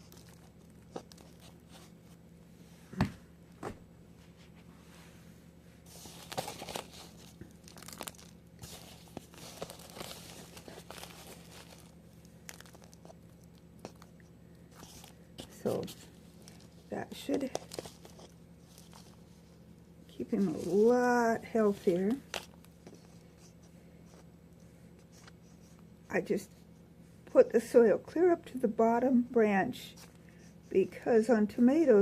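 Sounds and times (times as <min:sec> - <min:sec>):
soil rustling and crunching: 0:06.0 - 0:13.2.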